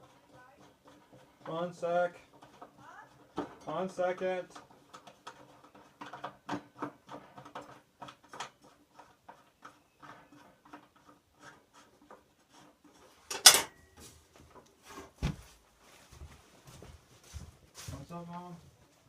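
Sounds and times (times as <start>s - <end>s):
small clicks and knocks: 2.2s - 13.5s.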